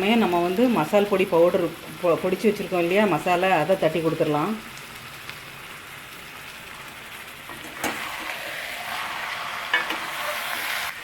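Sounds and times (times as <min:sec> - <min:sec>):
chicken sizzling in hot oil: 0:00.0 - 0:11.0.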